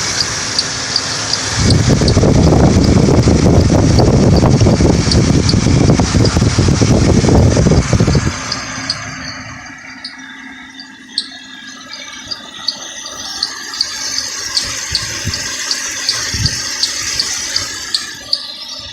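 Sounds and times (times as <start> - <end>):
engine hiss: 0.0 - 18.9
short high engine chirp: 7.4 - 18.9.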